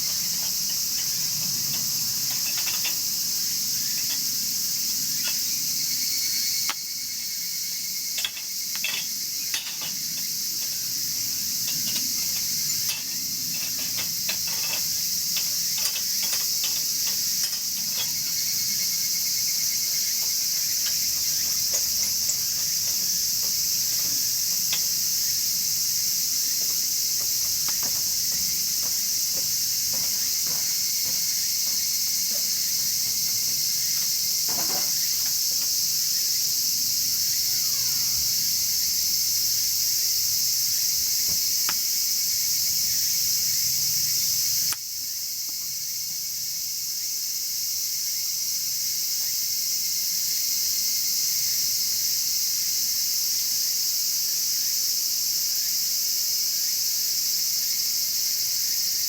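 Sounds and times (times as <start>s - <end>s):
high-pitched insect chorus: 0.0s - 59.0s
wood fire crackling: 8.2s - 18.4s, 19.9s - 25.1s.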